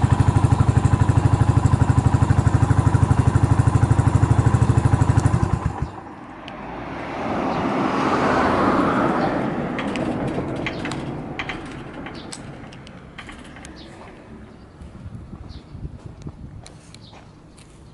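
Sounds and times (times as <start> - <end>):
motorcycle engine idling: 0.0 - 6.2
rushing traffic noise: 0.0 - 17.9.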